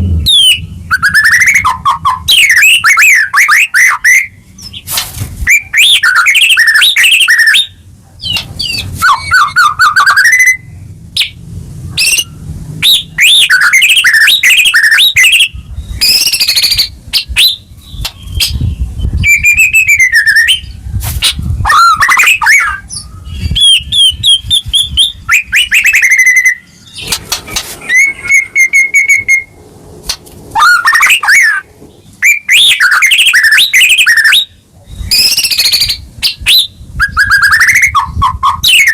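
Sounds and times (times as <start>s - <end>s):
low rumble: 0.0s - 2.9s, 26.7s - 30.6s
songbird whistling and trilling: 0.2s - 4.9s, 5.5s - 27.2s, 27.8s - 29.6s, 30.5s - 38.9s.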